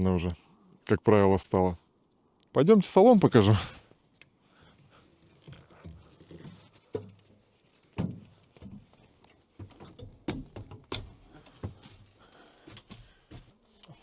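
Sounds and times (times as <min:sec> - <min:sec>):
thumps of climbing into cabin: 0:05.5 - 0:13.5.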